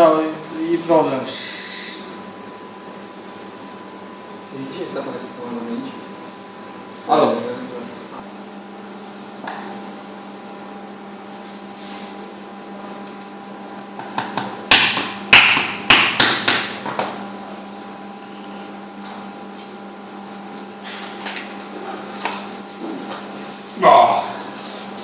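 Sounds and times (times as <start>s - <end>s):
steady electrical hum: 0.0s - 25.0s
sharp knocks: 14.0s - 16.8s.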